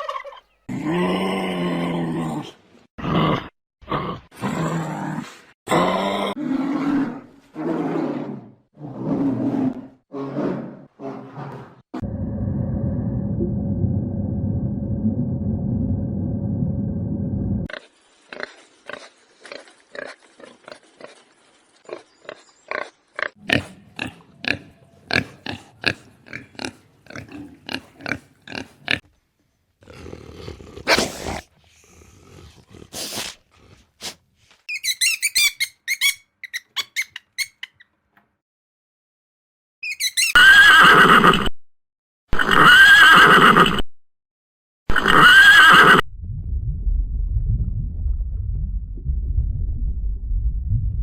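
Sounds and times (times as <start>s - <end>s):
loud drawn-out animal calls: 44.9s - 46.0s.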